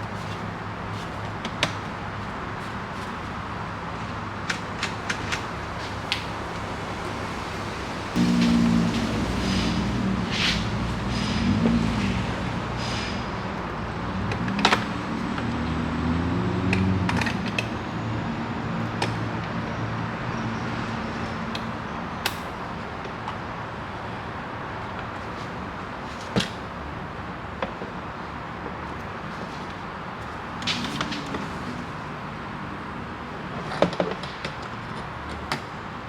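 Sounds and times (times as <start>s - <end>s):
low wavering drone: 8.2s - 12.7s.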